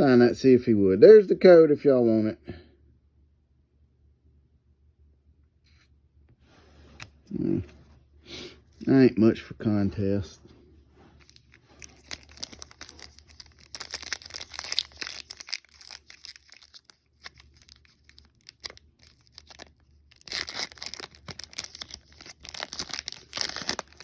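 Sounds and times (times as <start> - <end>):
foil wrapper tearing and crinkling: 11.2 - 24.0.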